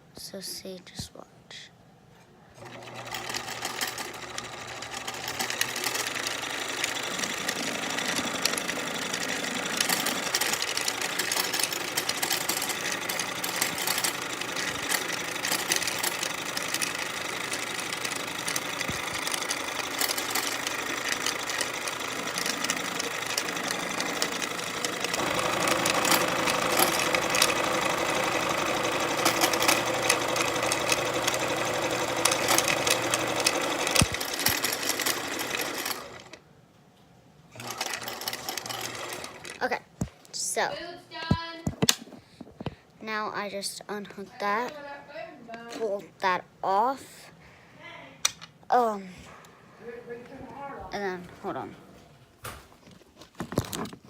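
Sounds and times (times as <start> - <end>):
sewing machine motor running: 2.6 - 36.4, 37.5 - 39.6.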